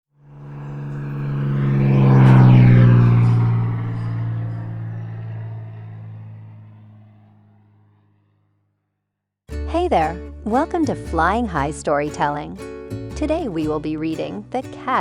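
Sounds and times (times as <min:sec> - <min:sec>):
airplane fly-by engine drone: 0:00.1 - 0:08.6.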